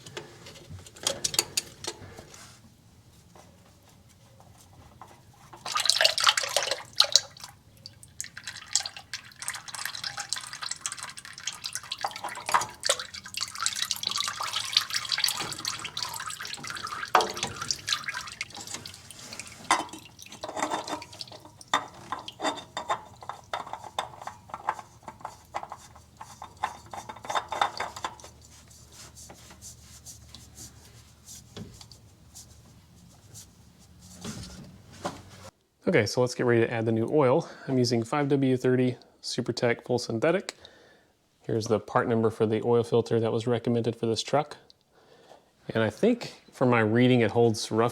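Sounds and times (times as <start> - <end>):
handling clicks and knocks: 0.0 - 2.3, 12.1 - 28.4
oil dripping and trickling: 4.0 - 34.6.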